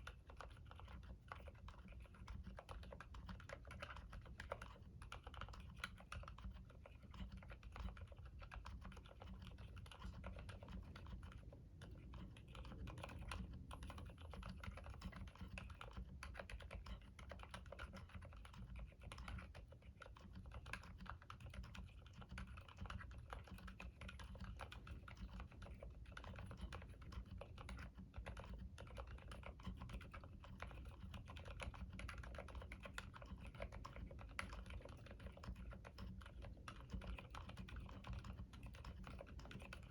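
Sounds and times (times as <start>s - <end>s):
mechanical keyboard typing: 12.2s - 39.9s.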